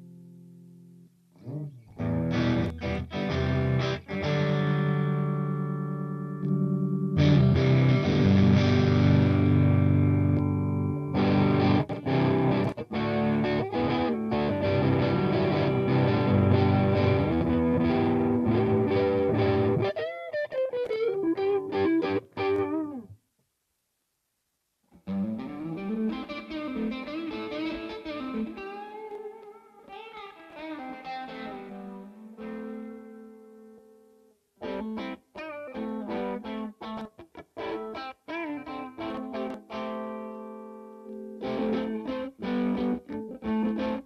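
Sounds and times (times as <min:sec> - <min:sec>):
electric guitar single notes with bends: 0:00.0 - 0:23.2, 0:25.0 - 0:44.0
distorted electric guitar chord: 0:01.5 - 0:19.9.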